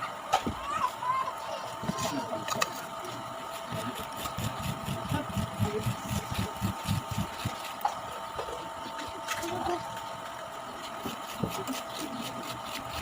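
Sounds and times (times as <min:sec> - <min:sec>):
electrical hum: 0:00.0 - 0:13.0
person chewing crunchy food: 0:03.4 - 0:07.9.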